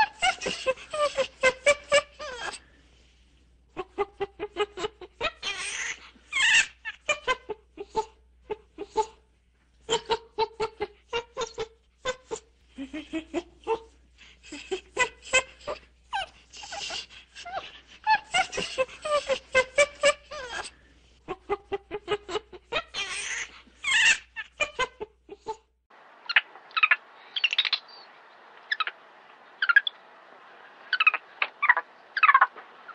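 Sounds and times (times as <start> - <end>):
monkeys chattering and screeching: 14.4 - 20.7, 29.6 - 29.9, 30.9 - 32.9.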